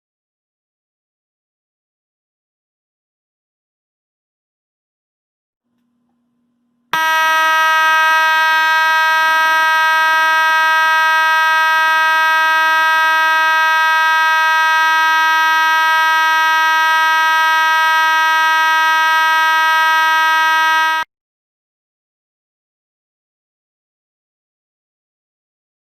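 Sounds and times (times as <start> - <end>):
fire alarm horn steady tone: 6.9 - 21.1.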